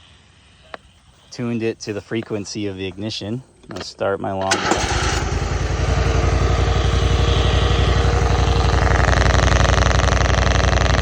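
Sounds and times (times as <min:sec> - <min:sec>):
lawn mower engine running: 0:04.4 - 0:11.0
ignition buzz on radio: 0:06.8 - 0:11.0.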